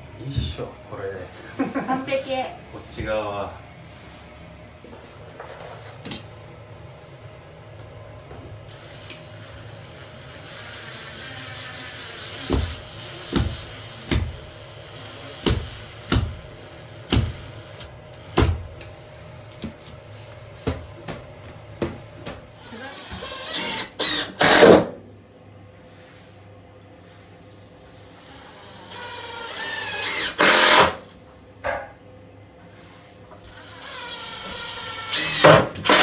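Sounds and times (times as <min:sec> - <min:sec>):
power drill running: 0:08.7 - 0:18.5, 0:22.5 - 0:24.8, 0:28.0 - 0:31.0, 0:33.5 - 0:36.0.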